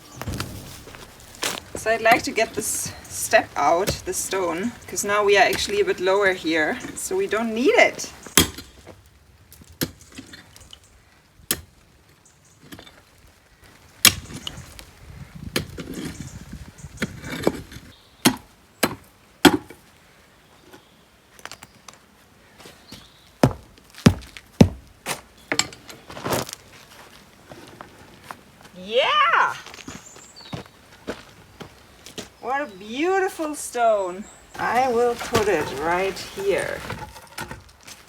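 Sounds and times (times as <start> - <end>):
scraping on stone: 0.0 - 7.4, 34.6 - 38.0.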